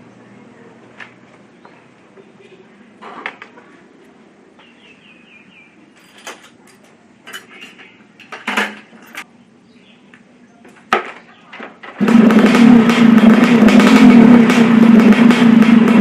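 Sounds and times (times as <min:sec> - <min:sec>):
tools clinking on metal: 0:06.0 - 0:09.3.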